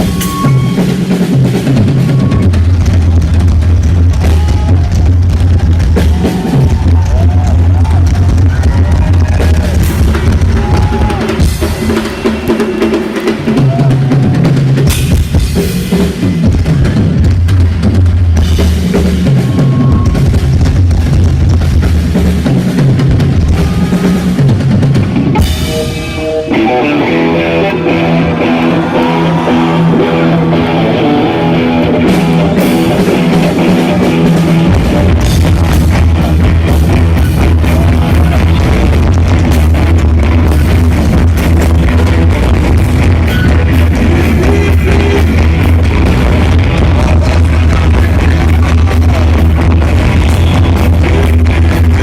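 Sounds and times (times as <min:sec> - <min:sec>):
bass guitar: 0:00.0 - 0:52.0
drum kit: 0:00.0 - 0:52.0
rock band music: 0:00.0 - 0:52.0.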